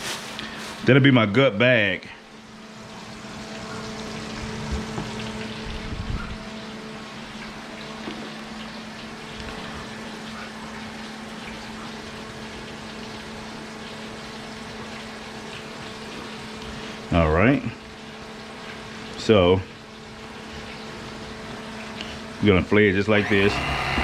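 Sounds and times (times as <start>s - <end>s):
fish sizzling in grease: 0.0s - 0.8s
grease crackles: 0.0s - 1.4s, 2.8s - 24.0s
low steady hum: 0.0s - 24.0s.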